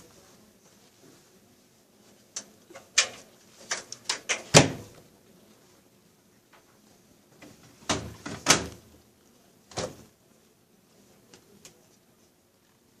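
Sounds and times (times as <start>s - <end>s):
washing machine doors shutting: 7.8s - 8.8s.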